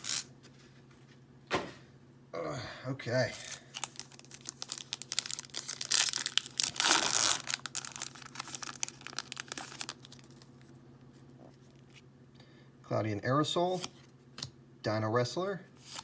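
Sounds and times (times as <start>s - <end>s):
foil wrapper crinkling and tearing: 0.0s - 0.3s, 3.4s - 10.7s.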